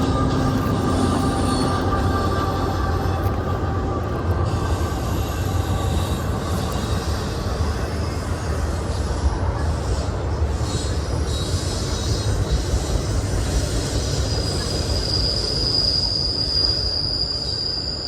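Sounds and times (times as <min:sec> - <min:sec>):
low rumbling noise: 0:00.0 - 0:10.5.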